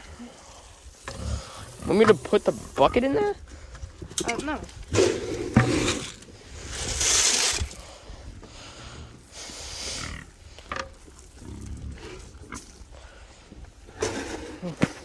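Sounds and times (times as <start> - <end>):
pigs grunting: 0.3 - 3.4, 4.8 - 6.2, 8.7 - 10.6, 11.2 - 13.0.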